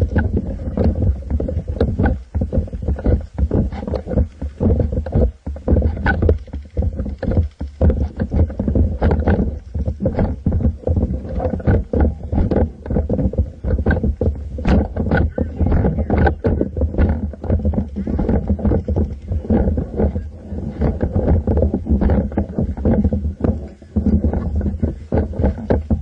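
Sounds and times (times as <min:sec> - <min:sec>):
camera handling rumble: 0:00.0 - 0:26.0
knocks and rustles of handling: 0:00.0 - 0:26.0.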